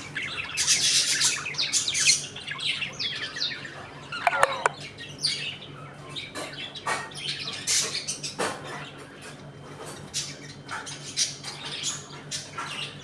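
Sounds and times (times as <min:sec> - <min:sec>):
budgerigars chirping and chattering: 0:00.0 - 0:09.0
sharp click: 0:04.2 - 0:04.8.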